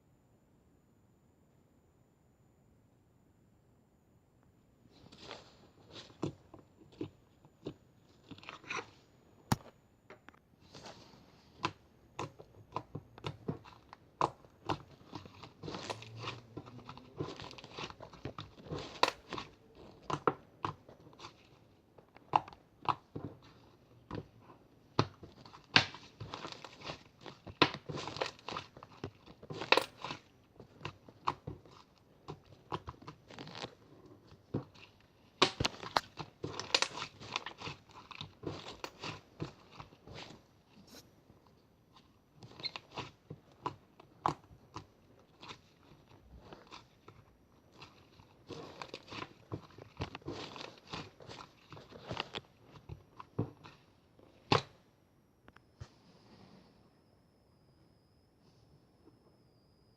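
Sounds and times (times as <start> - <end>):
crunching and crackling: 5.0 - 9.7, 10.7 - 54.8.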